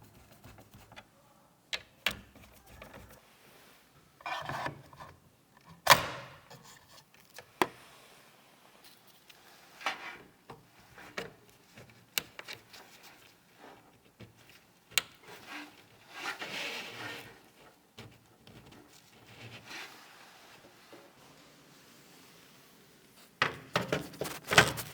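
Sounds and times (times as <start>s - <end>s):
rubbing and scraping: 23.8s - 24.9s.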